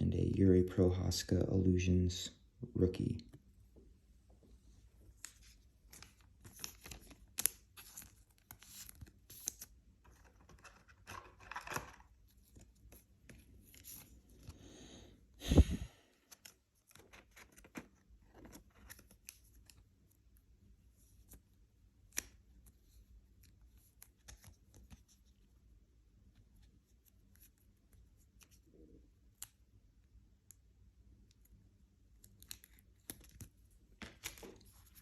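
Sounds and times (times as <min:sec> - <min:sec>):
cards rustling and clicking: 0:05.1 - 0:14.6, 0:16.2 - 0:20.3, 0:21.0 - 0:25.5, 0:31.2 - 0:35.0.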